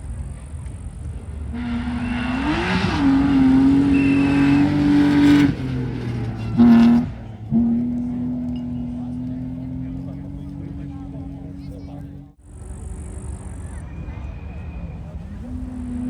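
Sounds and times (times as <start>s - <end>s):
rally car engine revving: 1.0s - 12.4s, 15.2s - 16.0s.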